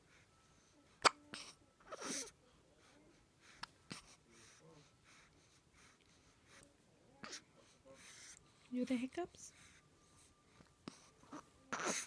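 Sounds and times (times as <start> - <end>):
baby hiccupping: 11.3 - 12.0.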